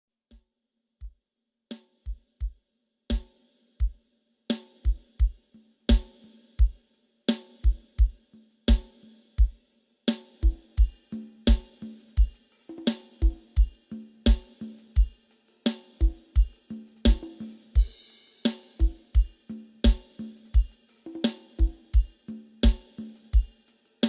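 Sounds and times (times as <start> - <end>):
hi-hat and cymbals: 1.7 - 24.0.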